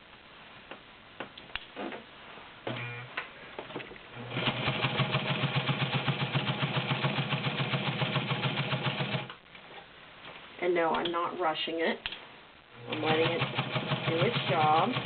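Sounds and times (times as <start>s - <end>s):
sewing machine stitching: 4.2s - 9.3s, 12.8s - 15.0s
sewing machine clicks: 12.9s - 15.0s.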